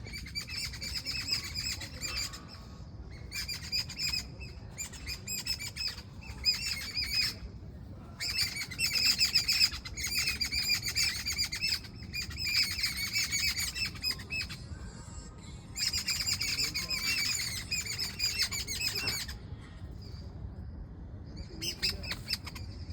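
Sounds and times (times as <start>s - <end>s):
birds chirping: 0.0s - 22.9s.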